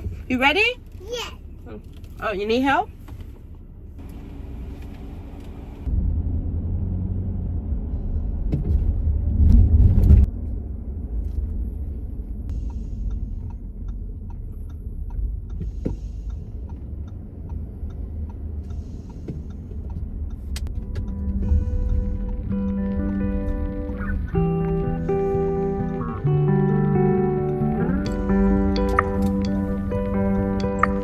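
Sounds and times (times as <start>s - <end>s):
car driving interior rumble: 0.0s - 31.0s.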